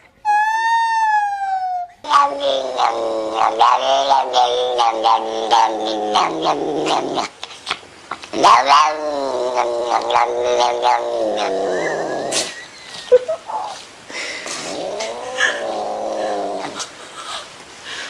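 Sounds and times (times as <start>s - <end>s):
cat yowling: 0.2s - 7.0s.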